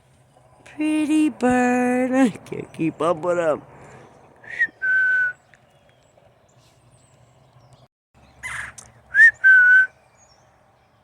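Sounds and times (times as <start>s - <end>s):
person whistling: 4.4s - 5.4s, 9.1s - 9.9s.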